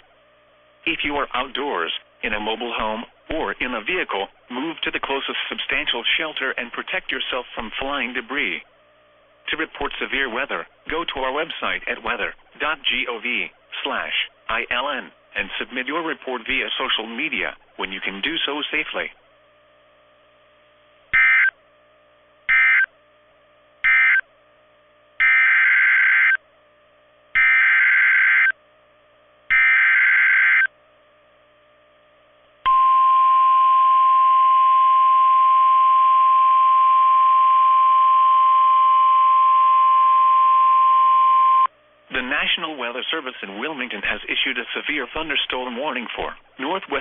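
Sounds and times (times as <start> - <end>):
radio data bursts: 9.5 - 19.2, 21.1 - 21.6, 22.5 - 22.9, 23.8 - 24.2, 25.2 - 26.4, 27.4 - 28.6, 29.5 - 30.7
steady alarm tone: 21.1 - 21.6, 22.4 - 23.0, 23.8 - 24.3, 25.2 - 26.5, 27.3 - 28.6, 29.5 - 30.8, 32.7 - 41.7.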